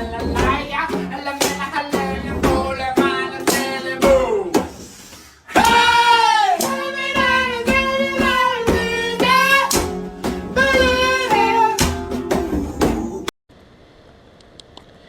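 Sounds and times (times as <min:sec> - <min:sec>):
person singing long notes: 0:05.5 - 0:13.3.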